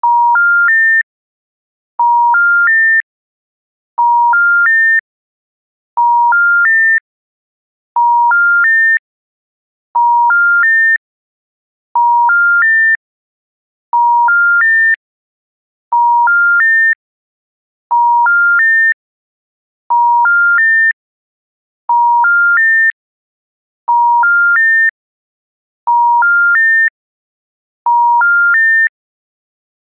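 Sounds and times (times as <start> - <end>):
telephone rising three-tone beeps: 27.9 - 28.2.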